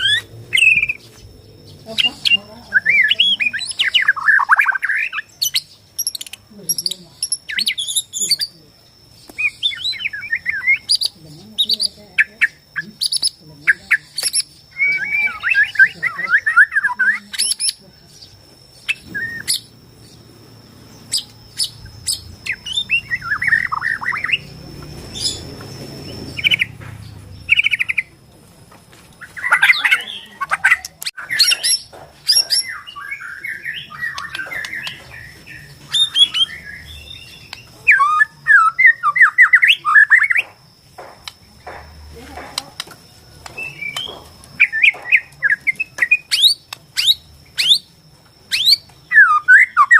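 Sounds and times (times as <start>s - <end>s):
bird singing warbled phrases: 0.0s - 28.3s, 29.2s - 49.9s
bird clicking and chattering: 1.9s - 8.5s, 9.3s - 17.8s, 29.2s - 32.7s, 33.8s - 36.5s.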